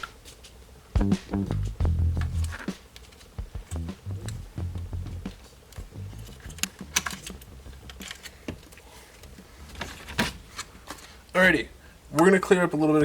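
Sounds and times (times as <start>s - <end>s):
dull low knocks: 1.0s - 2.6s, 3.4s - 6.1s
tools clicking and tapping: 5.7s - 9.4s.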